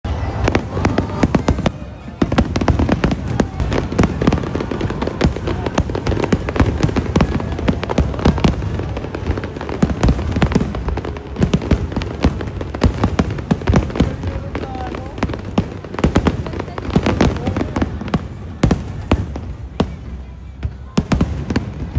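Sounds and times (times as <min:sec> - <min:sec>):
fireworks bangs and crackles: 0:00.0 - 0:21.9.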